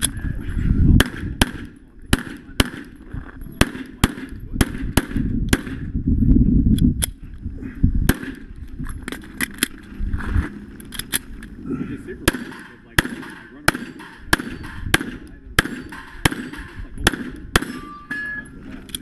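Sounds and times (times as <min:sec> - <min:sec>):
pistol shots: 0:01.0 - 0:03.0, 0:03.6 - 0:05.8, 0:08.1 - 0:08.5, 0:12.2 - 0:18.0.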